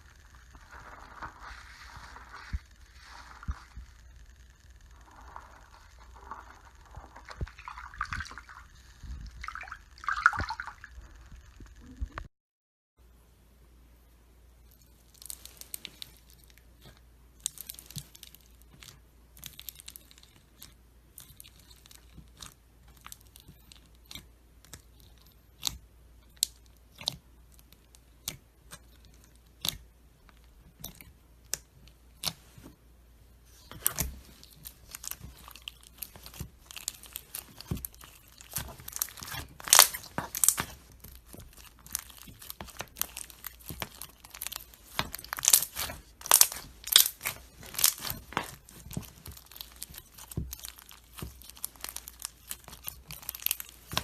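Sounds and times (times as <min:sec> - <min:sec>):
slime crackling and popping: 0:00.0 - 0:11.1, 0:14.7 - 0:32.6, 0:33.5 - 0:54.0.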